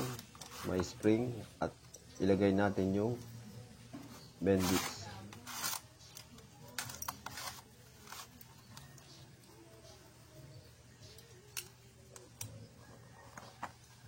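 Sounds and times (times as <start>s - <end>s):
clicks of small metal parts: 5.5s - 7.6s, 11.1s - 12.6s.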